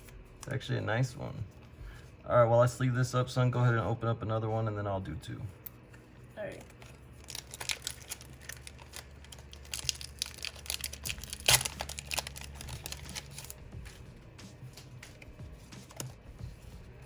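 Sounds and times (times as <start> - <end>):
foil wrapper crinkling and tearing: 6.4 - 13.7.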